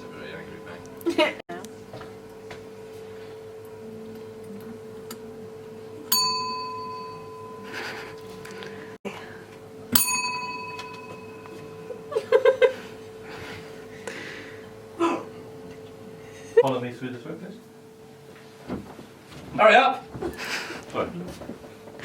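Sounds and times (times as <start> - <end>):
faint steady hum: 0.0 - 18.8
small bell ringing: 6.1 - 8.3, 9.9 - 12.2.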